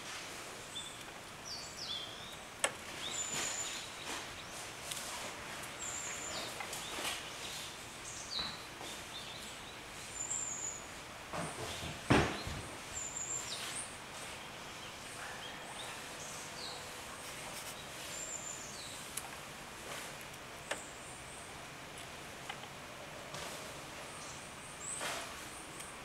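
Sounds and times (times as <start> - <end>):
steady outdoor hiss: 0.0 - 26.0
songbirds high call notes: 0.6 - 4.8, 5.6 - 19.2.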